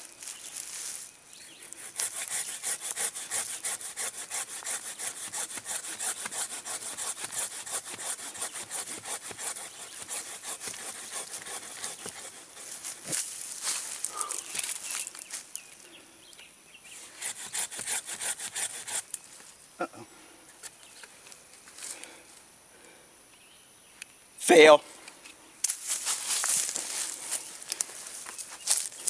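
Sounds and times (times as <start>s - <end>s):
hand saw cutting tree trunk: 1.6s - 13.3s, 17.0s - 19.2s.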